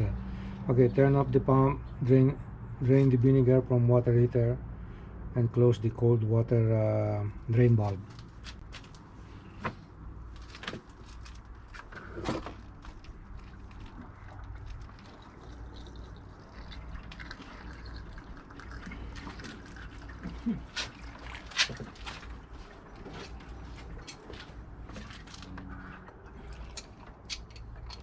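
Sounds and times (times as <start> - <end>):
liquid trickling from drain valve: 13.2 - 23.6
handling clicks and knocks: 26.7 - 28.0.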